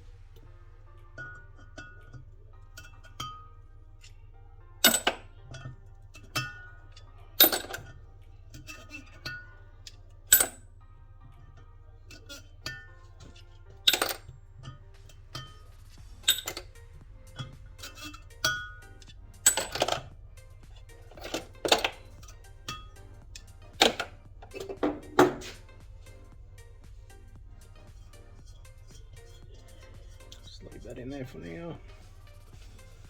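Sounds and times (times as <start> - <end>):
metal parts clinking: 4.8 - 7.9, 10.3 - 10.6, 12.1 - 14.3, 16.2 - 18.6, 19.3 - 20.2, 20.8 - 25.7.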